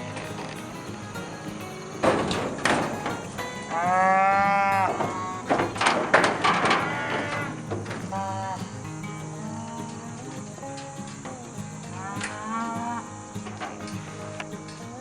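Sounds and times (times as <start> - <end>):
cattle bawling: 6.4 - 7.6.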